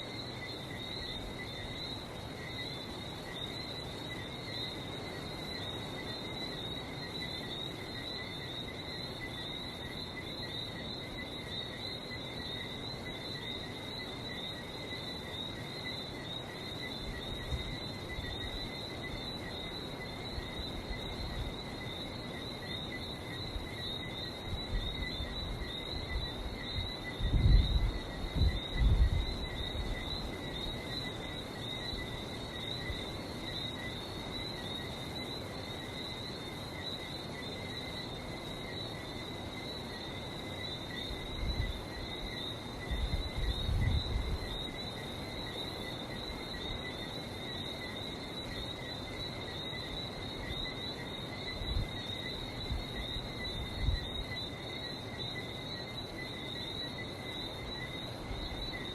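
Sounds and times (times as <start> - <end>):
frogs whistling chorus: 0.0 - 58.9.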